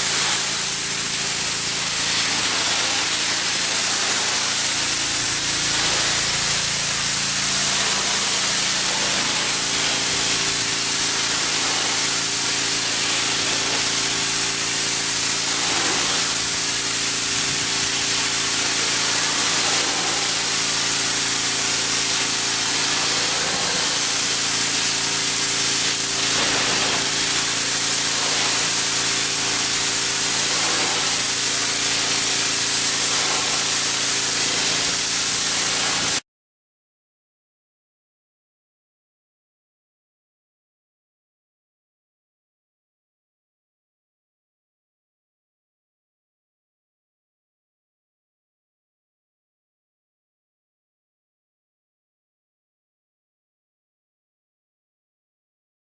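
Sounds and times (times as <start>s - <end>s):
motor and pump hum: 0.0s - 36.2s
pressure washer spraying water: 0.0s - 36.2s.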